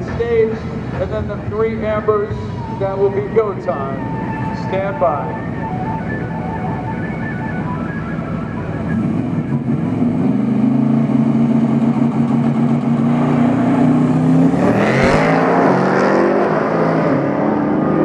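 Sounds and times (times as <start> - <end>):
race car engines at full throttle: 0.0 - 18.0
car passing fast: 13.0 - 18.0.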